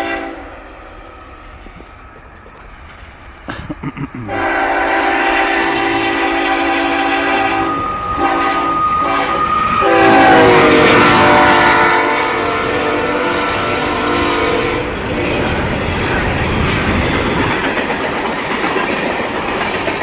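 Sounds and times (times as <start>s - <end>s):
locomotive air horn chord: 0.0s - 0.6s, 4.3s - 15.6s.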